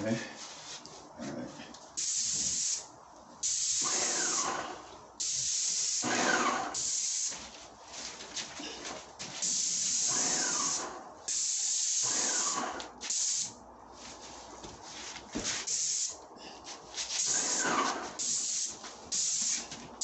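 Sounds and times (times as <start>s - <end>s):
paint spray gun hissing: 2.0s - 2.8s, 3.4s - 4.6s, 5.2s - 7.4s, 9.4s - 13.6s, 15.7s - 16.2s, 17.2s - 19.7s.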